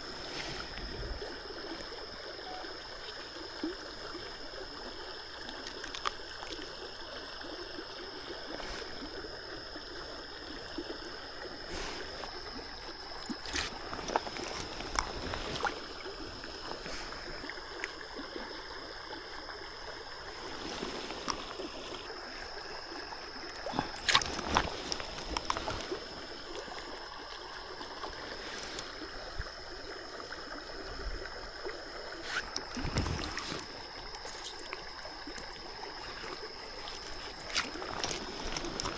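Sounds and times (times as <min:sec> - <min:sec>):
river water flowing: 0:00.0 - 0:38.9
thin high tone: 0:01.7 - 0:02.9.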